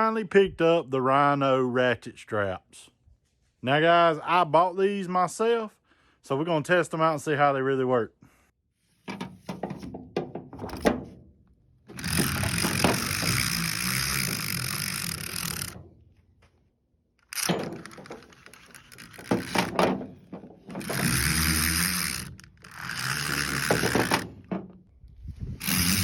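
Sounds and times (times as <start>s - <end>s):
ratchet strap clicks and knocks: 11.9s - 16.0s, 17.2s - 24.8s
webbing rasping: 11.9s - 16.0s, 17.2s - 24.8s, 25.6s - 26.0s.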